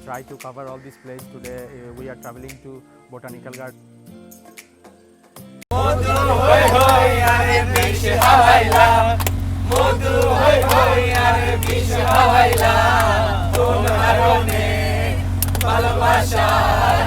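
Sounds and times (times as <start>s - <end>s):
group singing and chanting: 5.7s - 17.0s
steady low hum: 5.7s - 17.0s.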